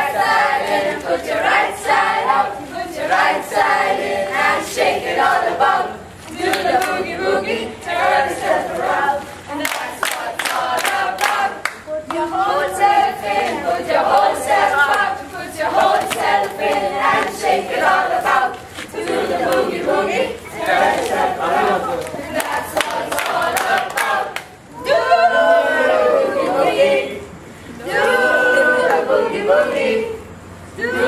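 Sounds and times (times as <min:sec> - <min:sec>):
group singing unaccompanied: 0:00.0 - 0:31.0
hands clapping: 0:09.6 - 0:12.2, 0:22.0 - 0:24.5.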